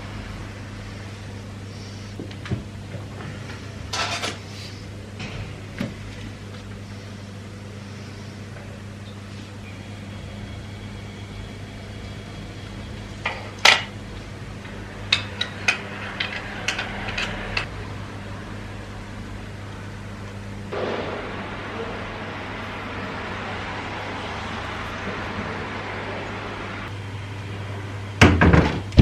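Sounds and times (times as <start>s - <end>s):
kitchen appliance humming: 0.0s - 20.7s.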